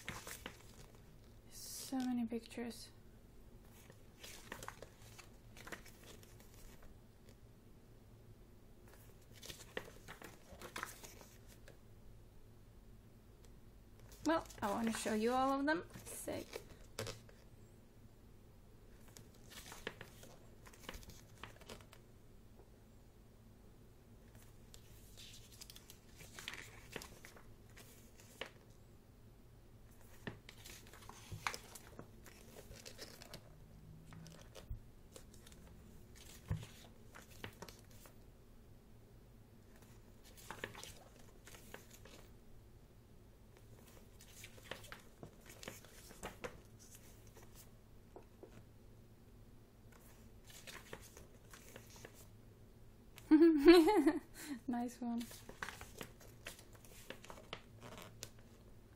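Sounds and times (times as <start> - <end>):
book pages turning: 0.0 - 1.1, 3.7 - 7.4, 8.9 - 11.8, 14.0 - 17.4, 19.0 - 22.0, 24.3 - 28.7, 29.9 - 38.2, 39.7 - 42.3, 43.6 - 48.6, 49.9 - 52.3, 55.2 - 58.6.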